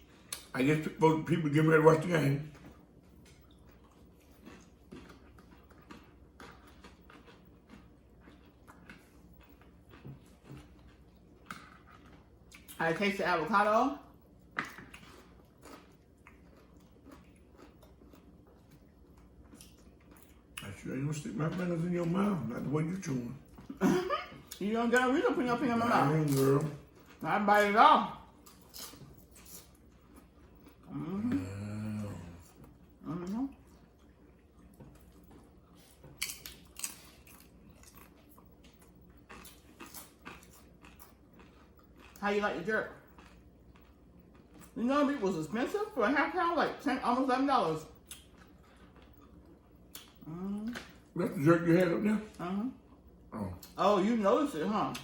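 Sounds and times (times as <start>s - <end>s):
chewing and crunching chips: 0.0s - 46.1s, 47.7s - 55.0s.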